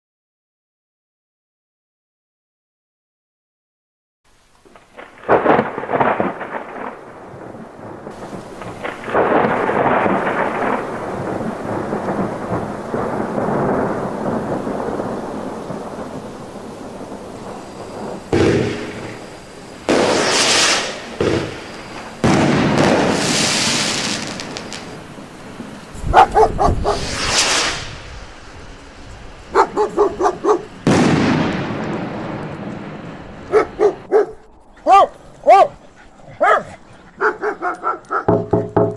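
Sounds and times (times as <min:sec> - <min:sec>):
thunder crack and rumble: 0:04.8 - 0:34.6
loud boom: 0:17.9 - 0:25.0, 0:30.8 - 0:33.5
dog barking: 0:26.0 - 0:27.1, 0:29.5 - 0:30.8, 0:33.5 - 0:38.7.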